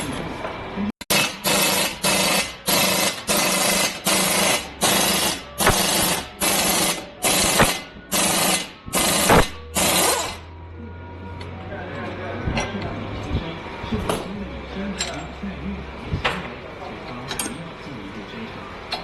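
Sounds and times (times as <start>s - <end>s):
air impact wrench bursts: 1.1s - 10.4s.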